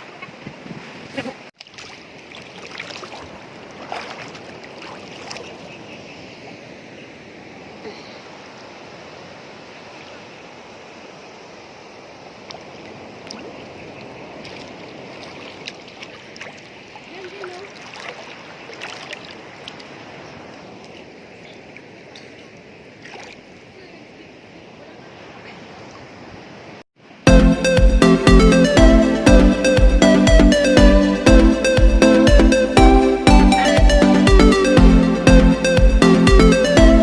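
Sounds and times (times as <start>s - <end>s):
waves breaking on shore: 0.0s - 37.0s
small splashes and ticks: 1.6s - 5.6s, 12.4s - 13.7s, 14.4s - 20.0s, 21.7s - 23.6s.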